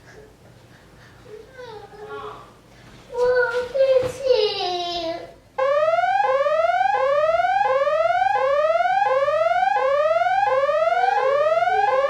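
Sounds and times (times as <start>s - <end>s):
electronic alarm whoop: 5.6s - 12.0s.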